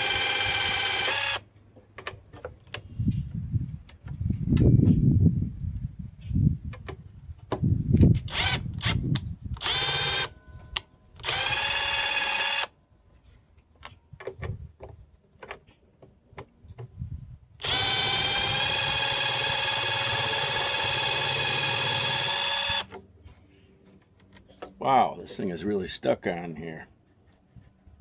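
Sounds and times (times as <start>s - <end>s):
impact driver running: 0.0s - 1.5s, 8.2s - 10.3s, 11.2s - 12.7s, 17.6s - 23.0s.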